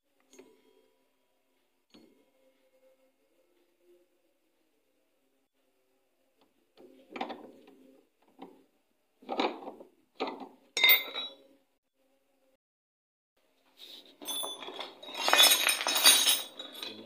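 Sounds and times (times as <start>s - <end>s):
metal tools clinking: 10.8s - 11.4s, 14.2s - 17.0s.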